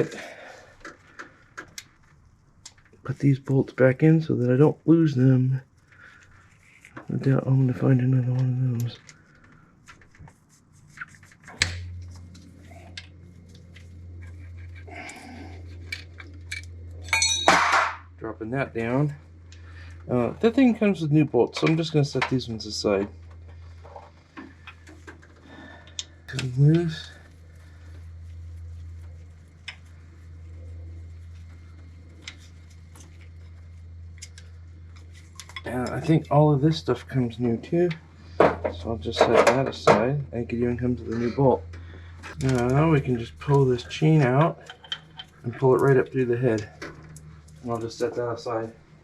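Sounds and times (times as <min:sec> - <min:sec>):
steady low hum: 0:00.0 - 0:49.0
bolts and parts clicking: 0:44.4 - 0:45.4.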